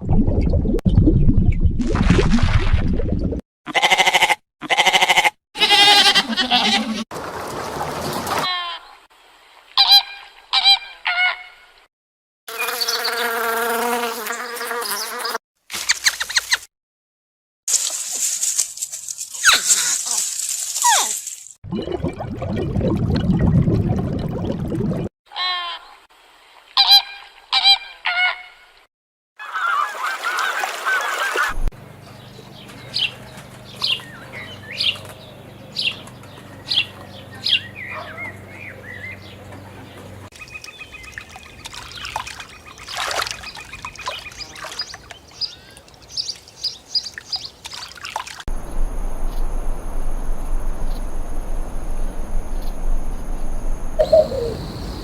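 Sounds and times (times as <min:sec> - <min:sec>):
birds calling: 0:29.4 - 0:47.6, 0:53.9 - 0:55.0.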